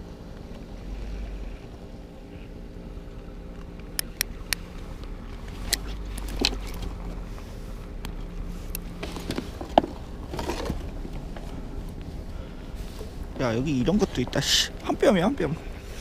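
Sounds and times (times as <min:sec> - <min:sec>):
low mechanical hum: 0:00.0 - 0:16.0
sharp clicks: 0:03.6 - 0:06.4.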